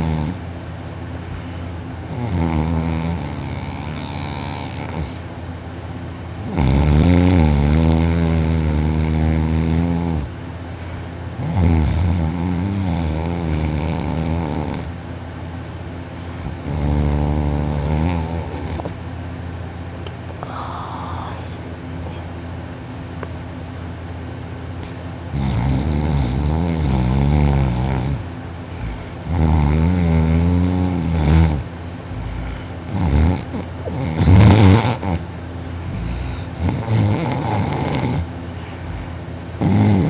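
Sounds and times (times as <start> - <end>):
man snoring loudly: 0.0 - 0.4, 2.0 - 5.2, 6.4 - 10.3, 11.4 - 14.9, 16.4 - 19.0, 25.3 - 40.0.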